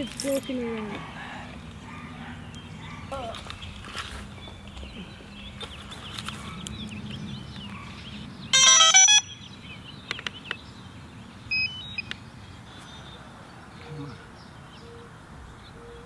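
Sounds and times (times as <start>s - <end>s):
birds chirping: 0.0s - 16.0s
electronic beeps: 8.6s - 9.5s, 11.5s - 12.1s.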